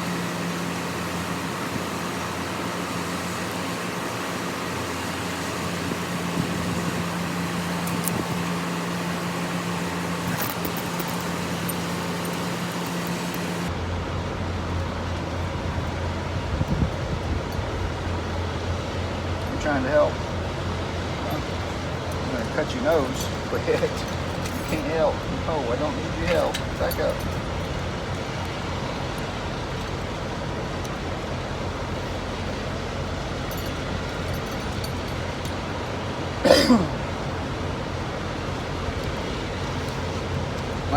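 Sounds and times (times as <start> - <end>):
continuous hiss: 0.0 - 16.0
idling engine drone: 0.0 - 40.9
motor vehicle rumble: 0.0 - 40.9.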